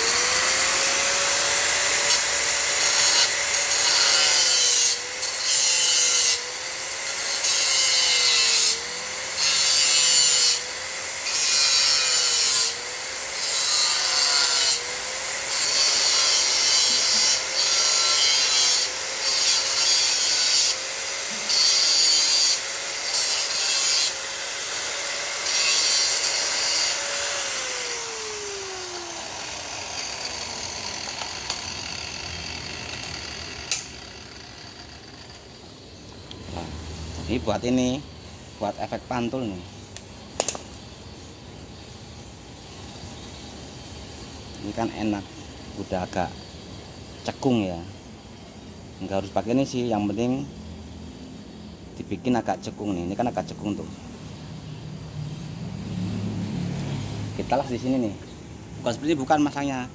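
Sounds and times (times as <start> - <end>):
angle grinder cutting metal: 0.0 - 38.0.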